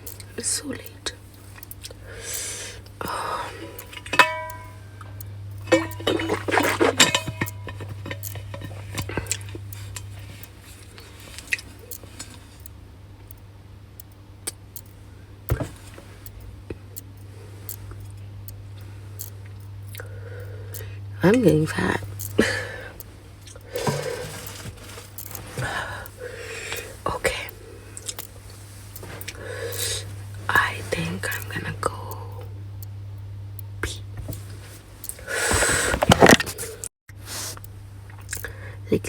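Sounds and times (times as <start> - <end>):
steady low hum: 0.0 - 39.0
utensil clinking against dish: 3.6 - 4.8, 5.6 - 9.6, 23.7 - 25.8.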